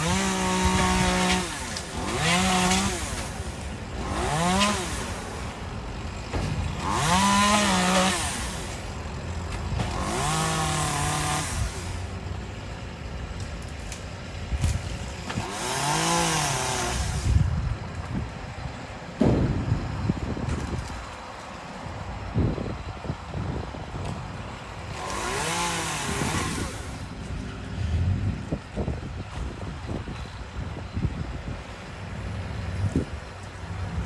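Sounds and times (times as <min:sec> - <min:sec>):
chainsaw revving: 0:00.0 - 0:08.9, 0:09.8 - 0:12.2, 0:15.3 - 0:17.4, 0:24.9 - 0:27.1.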